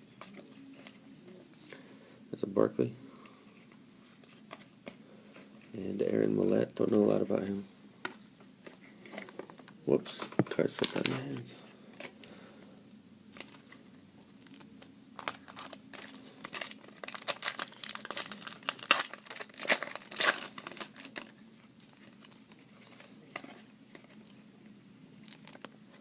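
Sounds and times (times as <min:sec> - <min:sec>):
foil wrapper crinkling and tearing: 0:14.4 - 0:23.0, 0:25.2 - 0:25.7.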